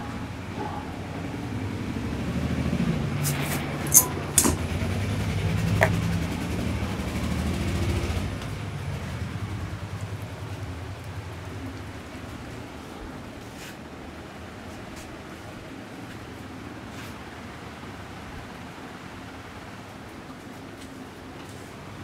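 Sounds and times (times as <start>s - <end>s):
vehicle engine running: 1.3s - 12.7s.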